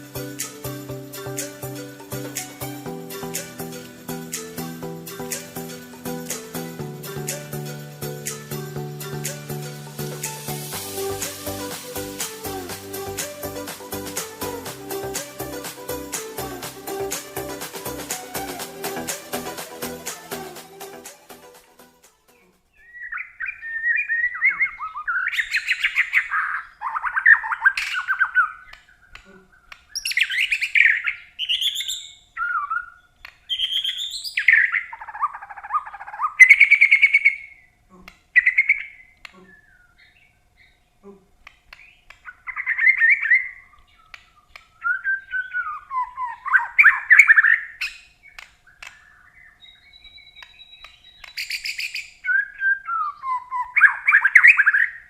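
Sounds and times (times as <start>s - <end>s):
songbird singing: 22.3s - 55.0s.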